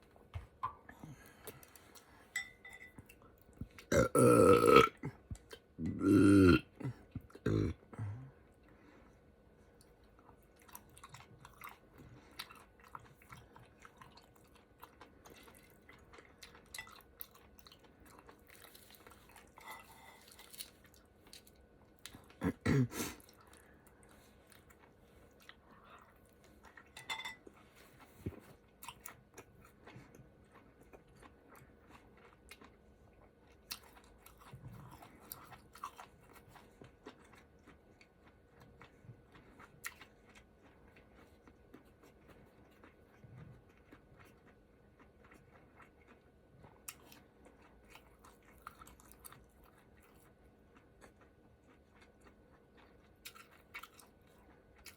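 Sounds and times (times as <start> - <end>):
close chewing with wet mouth clicks: 9.6 - 22.4, 27.6 - 54.9.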